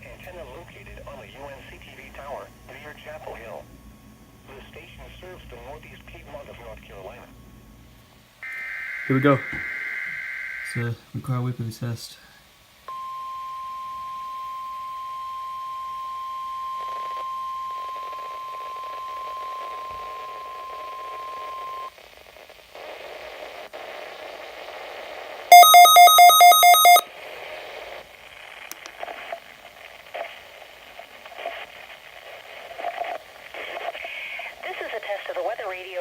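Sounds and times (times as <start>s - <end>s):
faint radio hiss: 0.0s - 36.0s
steady high warning alarm tone: 8.4s - 10.9s, 12.9s - 21.9s, 25.5s - 27.0s
rapid electronic beeping: 25.5s - 27.0s.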